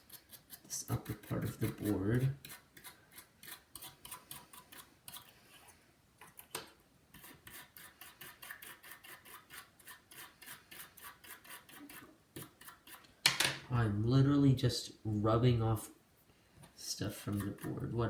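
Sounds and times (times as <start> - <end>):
toothbrush scrubbing circuit board: 0.0 - 5.3, 7.2 - 13.0, 17.0 - 18.0.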